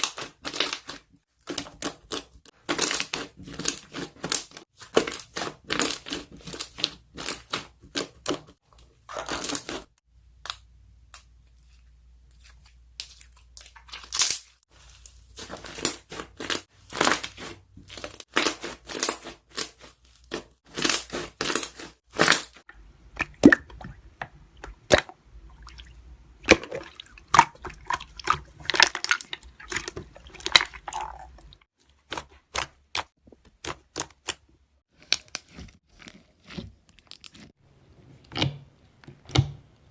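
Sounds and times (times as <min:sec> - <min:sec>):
slime bubbles popping and squishing: 0:35.0 - 0:37.6.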